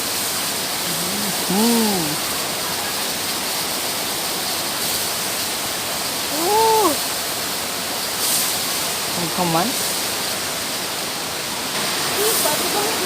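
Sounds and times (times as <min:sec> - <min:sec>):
waterfall rushing: 0:00.0 - 0:13.0
person humming: 0:00.8 - 0:02.3, 0:06.4 - 0:07.0.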